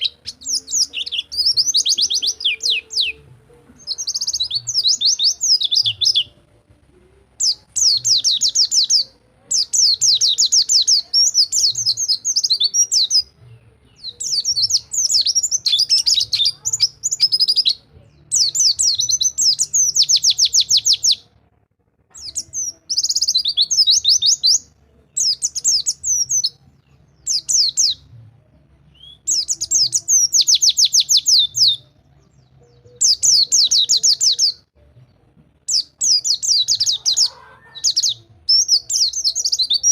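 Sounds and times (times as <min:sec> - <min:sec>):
bird singing rapid trills: 0:03.8 - 0:06.4.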